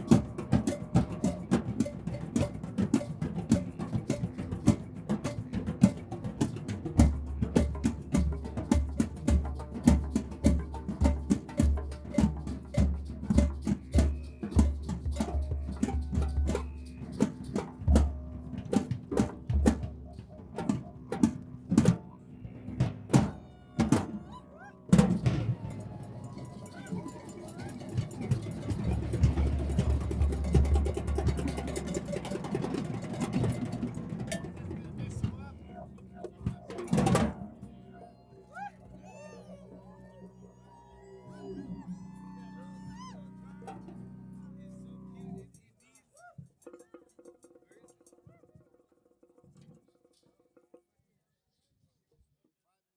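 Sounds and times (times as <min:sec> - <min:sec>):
hand drums playing fast rhythm: 0:00.0 - 0:24.2, 0:24.9 - 0:37.5.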